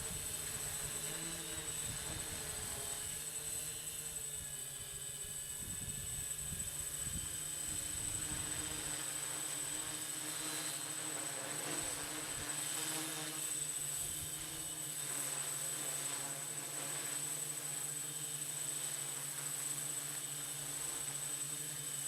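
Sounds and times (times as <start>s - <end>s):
hexcopter motors buzzing: 0.0s - 22.0s
wind rumbling on microphone: 5.5s - 8.6s.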